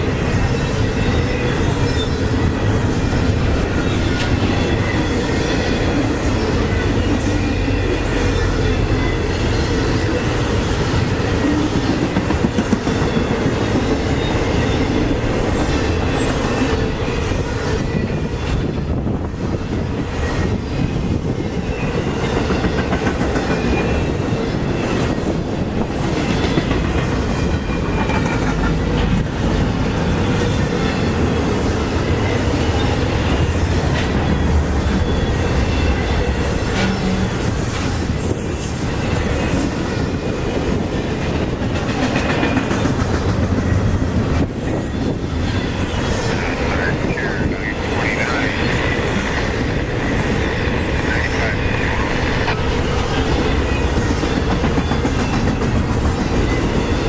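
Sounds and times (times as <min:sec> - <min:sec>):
train cars rumbling past: 0:00.0 - 0:57.0
high wheel squeal: 0:06.6 - 0:10.5, 0:30.2 - 0:39.7.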